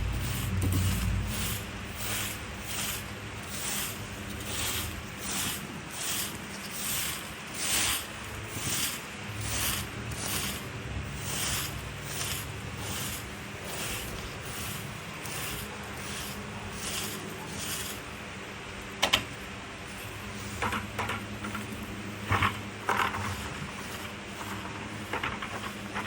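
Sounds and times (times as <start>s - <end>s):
dry leaves scraped on ground: 0.0s - 18.4s.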